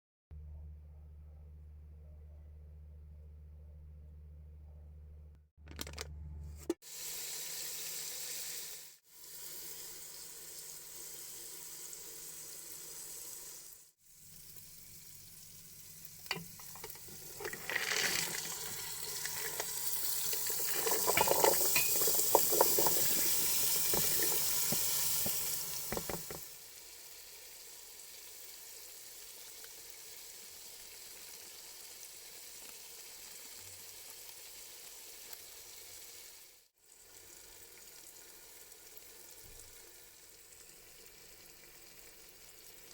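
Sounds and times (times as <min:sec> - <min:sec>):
food sizzling in a hot pan: 0:06.8 - 0:17.4, 0:18.2 - 0:42.9
stirring clicks and scrapes: 0:16.3 - 0:26.4.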